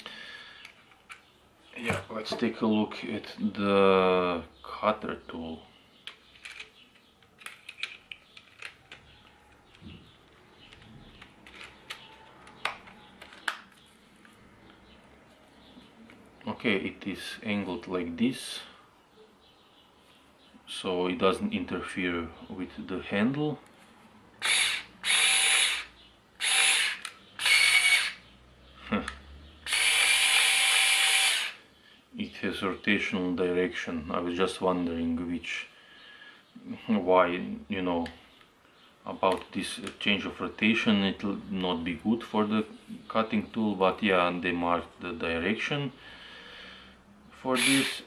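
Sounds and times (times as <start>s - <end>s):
cordless screwdriver bursts: 24.4s - 28.2s, 29.7s - 31.6s, 47.6s - 48.0s.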